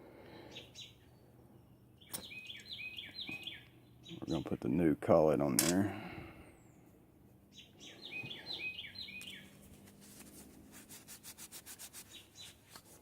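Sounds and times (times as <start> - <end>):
bird whistling notes: 7.5 - 9.5.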